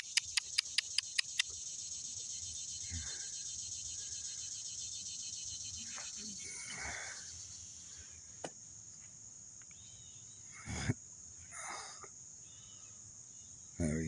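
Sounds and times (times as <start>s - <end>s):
sharp click: 0.0s - 1.5s
insects chirping: 0.0s - 14.0s.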